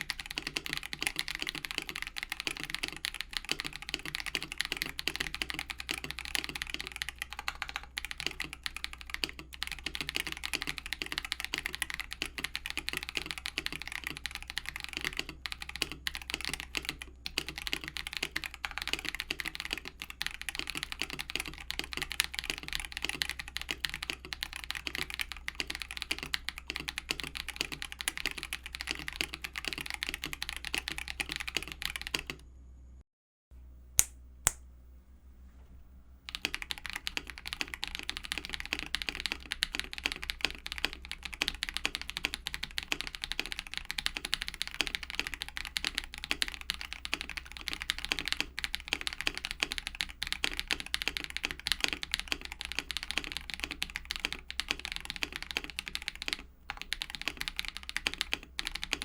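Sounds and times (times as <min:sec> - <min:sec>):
mechanical keyboard typing: 0:00.0 - 0:32.4, 0:36.3 - 0:59.0
sharp clicks: 0:34.0 - 0:34.6.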